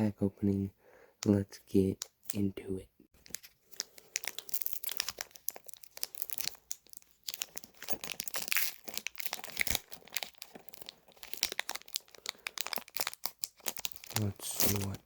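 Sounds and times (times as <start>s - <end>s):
foil wrapper tearing and crinkling: 3.2s - 15.0s.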